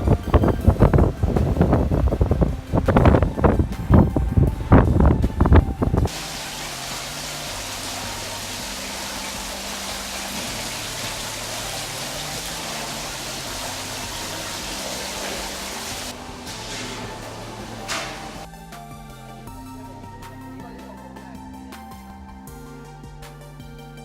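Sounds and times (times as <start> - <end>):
wind buffeting microphone: 0.0 - 16.4
faint low notes: 0.0 - 24.0
steady even hiss: 5.4 - 18.5.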